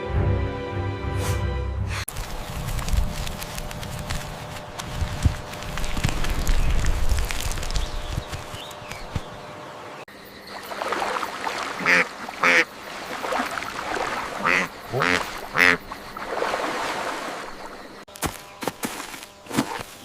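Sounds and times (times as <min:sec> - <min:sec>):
duck quacking: 0:11.8 - 0:12.7, 0:14.4 - 0:15.8.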